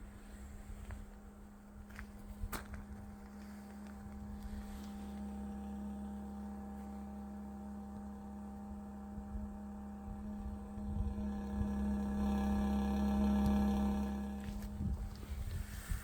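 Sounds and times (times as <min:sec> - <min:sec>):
water pump groaning hum: 0:01.0 - 0:16.0.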